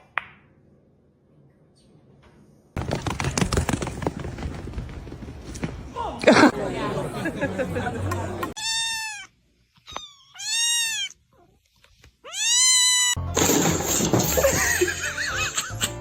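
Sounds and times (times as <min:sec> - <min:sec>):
cat chirp: 0:08.6 - 0:11.2, 0:12.2 - 0:13.2
cat meowing: 0:08.6 - 0:11.5, 0:12.2 - 0:13.2
music: 0:13.2 - 0:16.0.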